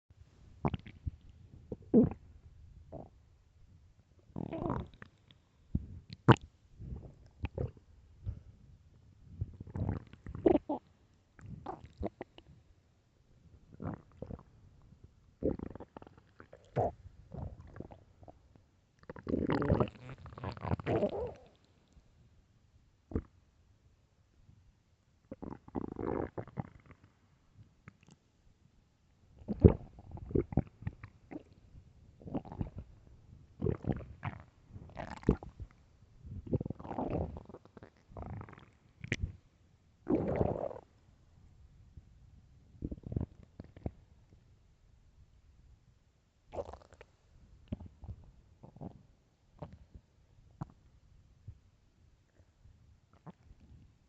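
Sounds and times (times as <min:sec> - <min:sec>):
stomach growling: 0:00.6 - 0:02.3, 0:02.9 - 0:03.2, 0:04.3 - 0:08.6, 0:09.3 - 0:12.6, 0:13.6 - 0:14.5, 0:15.4 - 0:18.4, 0:19.0 - 0:21.8, 0:23.1 - 0:23.3, 0:25.3 - 0:27.2, 0:29.4 - 0:39.4, 0:40.0 - 0:41.0, 0:42.7 - 0:44.4, 0:46.5 - 0:50.9, 0:53.1 - 0:54.0.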